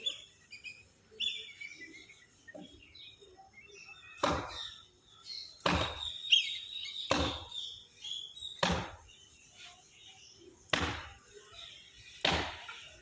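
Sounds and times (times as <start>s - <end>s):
birds chirping: 0.0s - 13.0s
axe chopping wood: 4.2s - 4.6s, 5.6s - 6.1s, 7.1s - 7.5s, 8.6s - 9.0s, 10.7s - 11.2s, 12.2s - 12.9s.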